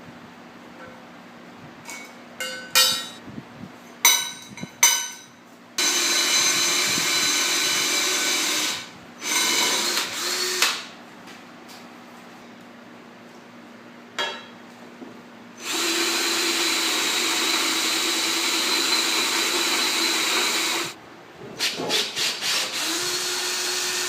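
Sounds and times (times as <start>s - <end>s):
steel parts clanking: 1.9s - 3.2s
handheld power tool running: 5.8s - 10.9s, 15.6s - 21.0s, 22.0s - 24.0s.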